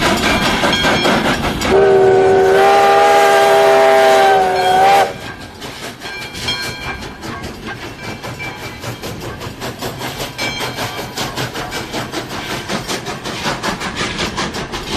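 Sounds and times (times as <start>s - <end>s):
train wheels clicking and rumbling: 0.0s - 14.9s
locomotive horn chord blast: 1.7s - 5.1s.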